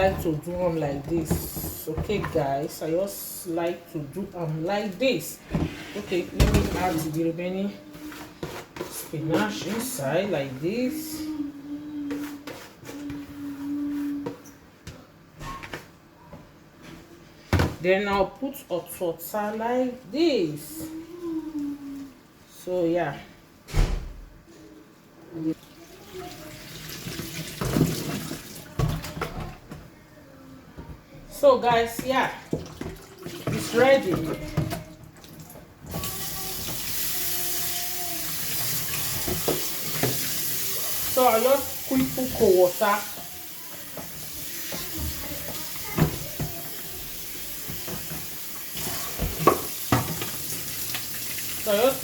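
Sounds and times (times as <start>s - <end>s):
water pouring and splashing: 25.6s - 29.1s, 32.4s - 52.0s.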